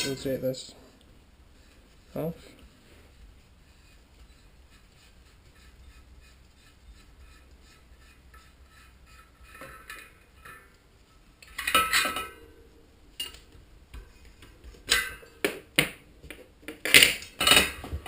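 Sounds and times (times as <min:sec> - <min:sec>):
faint ticking of metal parts: 0:01.0 - 0:12.6.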